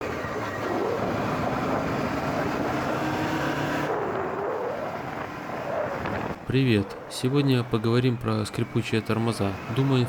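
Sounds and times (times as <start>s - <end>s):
motorcycle engine: 0.0s - 6.5s
wind and road noise: 0.0s - 10.0s.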